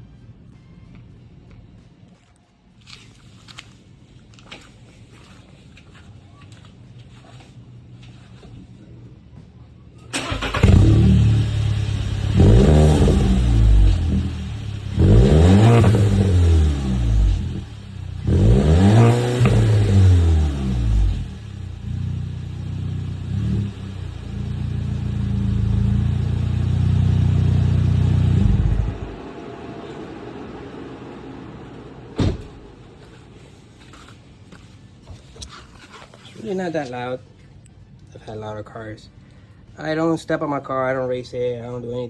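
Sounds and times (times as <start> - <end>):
car engine starting: 10.1 - 33.5
engine revving: 10.2 - 32.0
engine idling: 10.2 - 33.3.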